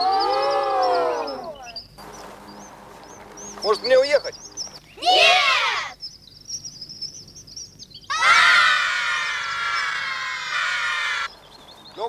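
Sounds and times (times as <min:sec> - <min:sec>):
bird twittering: 0:00.0 - 0:12.0
children shouting together: 0:05.0 - 0:06.0, 0:08.1 - 0:11.3.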